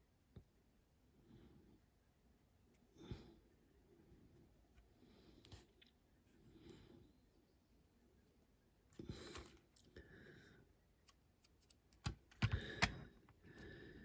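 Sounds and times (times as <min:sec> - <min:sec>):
small clicks and knocks: 0:11.1 - 0:13.4.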